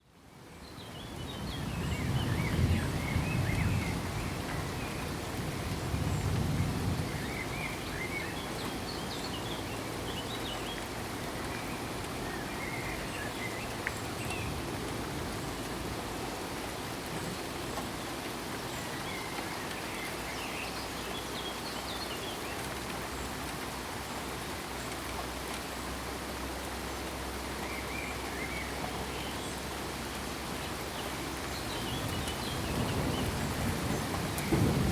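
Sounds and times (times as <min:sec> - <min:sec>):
steady rain falling: 0:00.0 - 0:34.9
low rumbles of thunder: 0:01.5 - 0:07.6, 0:31.8 - 0:34.9.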